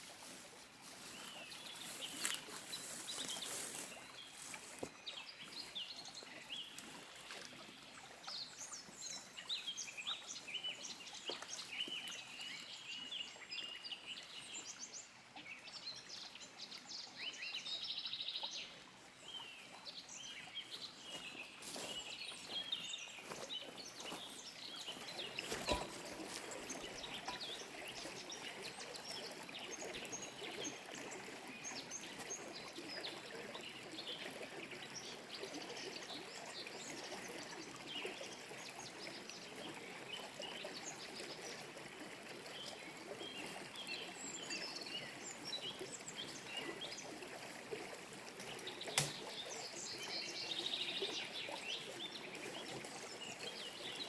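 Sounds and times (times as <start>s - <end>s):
small birds chirping: 0.0s - 14.8s, 19.2s - 34.4s, 48.4s - 54.0s
creek running: 0.0s - 54.0s.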